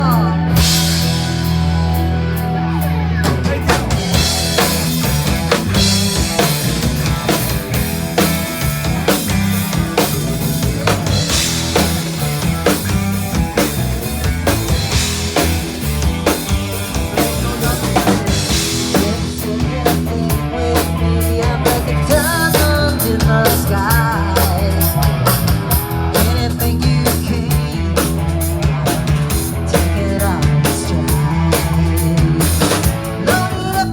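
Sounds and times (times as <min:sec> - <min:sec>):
bass guitar low notes: 0:00.0 - 0:33.9
drum kit beat: 0:00.0 - 0:33.9.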